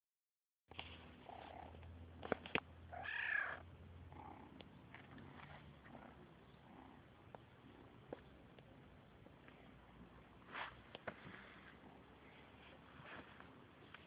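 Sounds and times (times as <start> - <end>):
kitten meow: 2.9 - 3.6
kitten purring: 3.0 - 8.1, 11.5 - 13.0.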